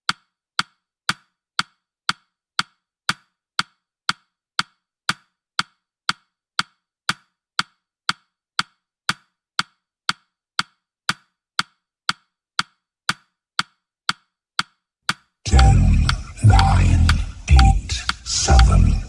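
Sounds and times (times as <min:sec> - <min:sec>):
timer ticking clicks: 0:00.0 - 0:19.0.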